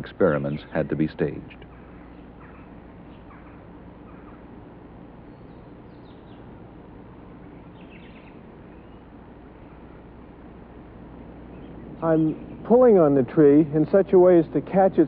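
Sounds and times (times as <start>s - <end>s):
low outdoor hum: 0.0s - 15.0s
faint bird chirps: 0.4s - 4.6s, 5.2s - 6.6s, 7.3s - 10.2s.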